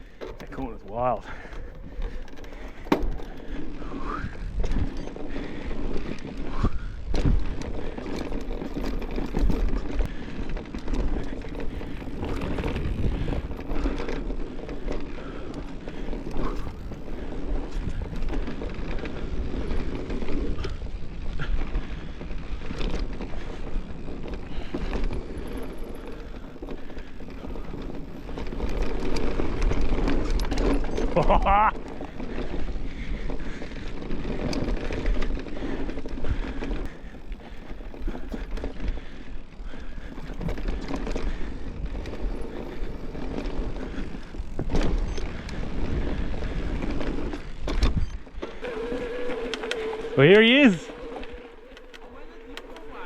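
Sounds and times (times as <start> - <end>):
bike knocks and rattles: 0.0 - 3.7
tyre noise on dirt: 0.0 - 53.0
wind rumble on microphone: 0.0 - 53.0.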